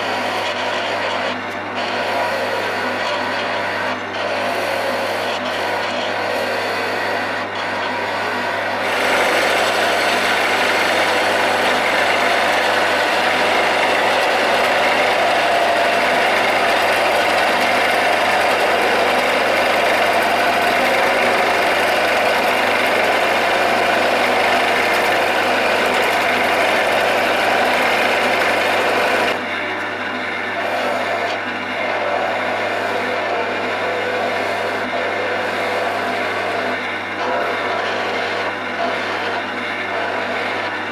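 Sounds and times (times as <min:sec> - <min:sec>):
lathe motor hum: 0:00.0 - 0:40.9
chisel shaving hiss: 0:08.8 - 0:29.4.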